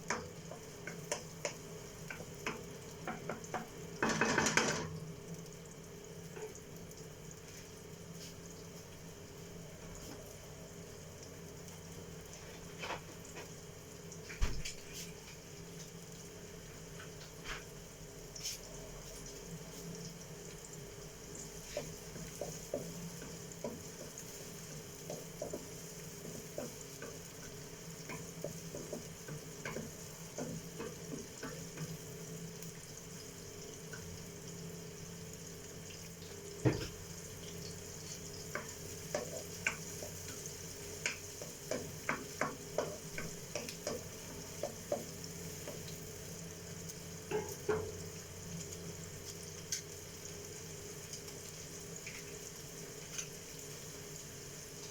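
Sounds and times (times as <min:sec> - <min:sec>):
food sizzling in a frying pan: 0:00.0 - 0:54.9
spatula knocking against pan: 0:21.8 - 0:24.2, 0:25.0 - 0:31.9, 0:41.0 - 0:45.1.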